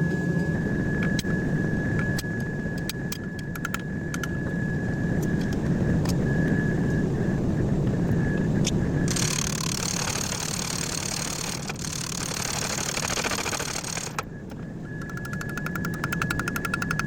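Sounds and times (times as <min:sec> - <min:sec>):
high machine whine: 0:00.0 - 0:17.0
low machine roar: 0:00.0 - 0:17.0
rapid mechanical clatter: 0:09.1 - 0:17.0.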